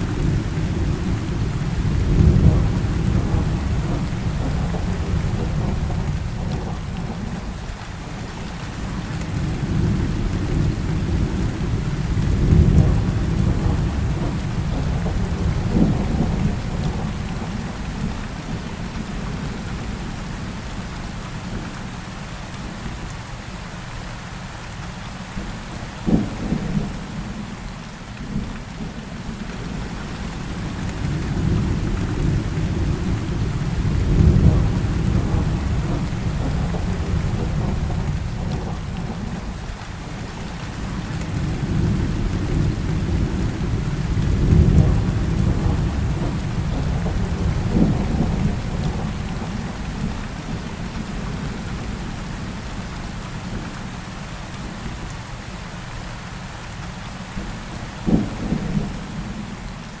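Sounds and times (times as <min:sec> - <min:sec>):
thunder rumbling: 0:00.0 - 0:07.5, 0:08.9 - 0:19.3, 0:29.6 - 0:52.9, 0:57.4 - 0:59.6
heavy rain: 0:00.0 - 1:00.0.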